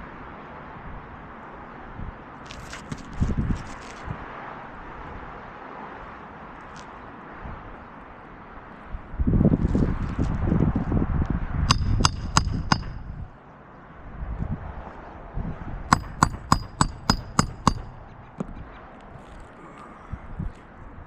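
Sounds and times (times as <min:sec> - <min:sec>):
hammer blows on nails: 0:11.7 - 0:13.3, 0:15.9 - 0:18.2.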